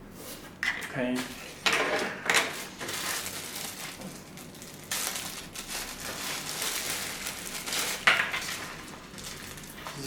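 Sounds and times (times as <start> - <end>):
plastic packaging crinkling: 2.5 - 10.0.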